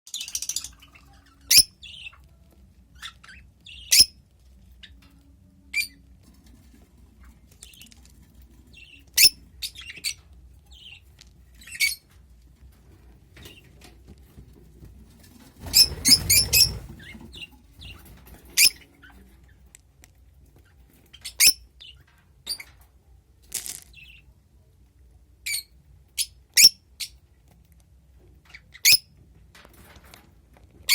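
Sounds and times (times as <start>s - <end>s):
bird chirping: 0.1s - 2.2s, 3.0s - 4.2s, 8.7s - 12.0s.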